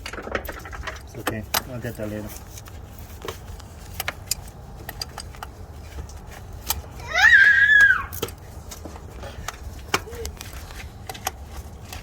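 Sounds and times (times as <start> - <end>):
child crying: 7.0 - 8.2, 10.0 - 10.3.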